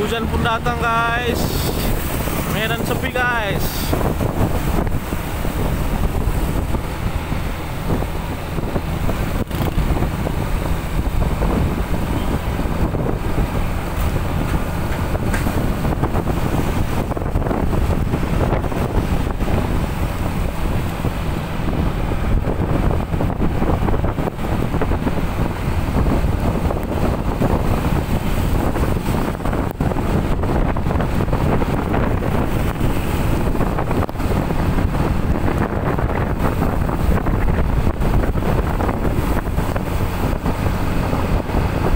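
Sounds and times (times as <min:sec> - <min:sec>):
heavy rain: 0:00.0 - 0:08.9
wind buffeting microphone: 0:00.0 - 0:41.9.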